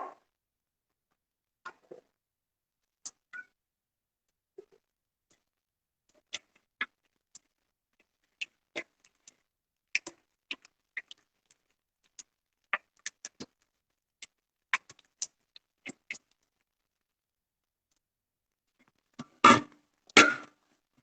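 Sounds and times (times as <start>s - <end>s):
hands kneading dough: 6.2s - 17.1s.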